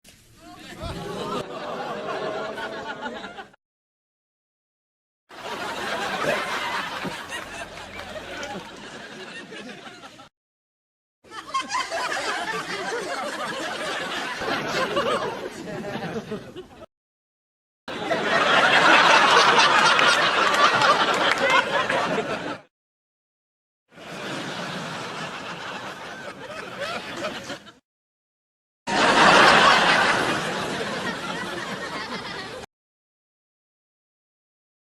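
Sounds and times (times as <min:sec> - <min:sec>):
studio audience laughing: 0:00.5 - 0:03.6, 0:05.3 - 0:10.3, 0:11.3 - 0:16.9, 0:17.9 - 0:22.7, 0:24.0 - 0:27.8, 0:28.9 - 0:32.7.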